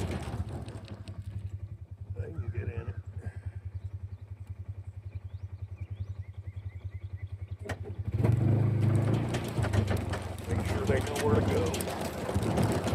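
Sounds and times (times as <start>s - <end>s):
small engine idling and revving: 0.0s - 12.9s
faint bird chirps: 2.2s - 8.1s.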